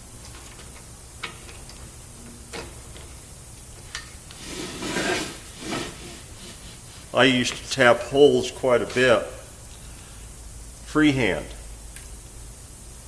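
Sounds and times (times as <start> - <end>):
tap scraping rasp: 4.3 - 7.6.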